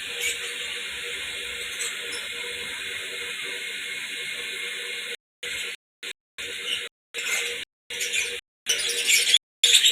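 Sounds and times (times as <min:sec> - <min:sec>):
lovebirds chattering: 0:06.6 - 0:09.9.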